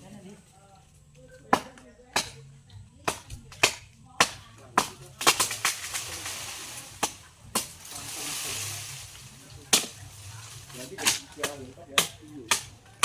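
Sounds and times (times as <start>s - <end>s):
rustling hiss: 5.2s - 11.9s.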